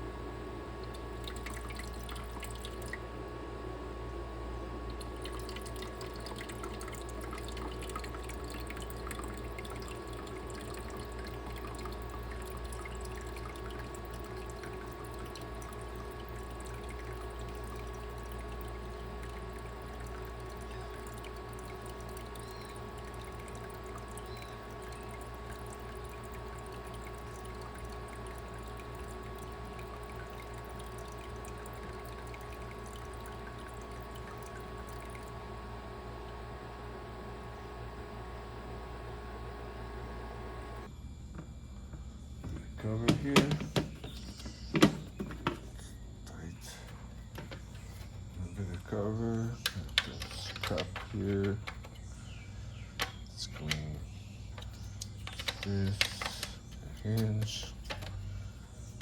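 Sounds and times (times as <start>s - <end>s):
constant hum: 0.0s - 59.0s
water trickling and pouring: 0.8s - 3.0s, 4.9s - 37.0s.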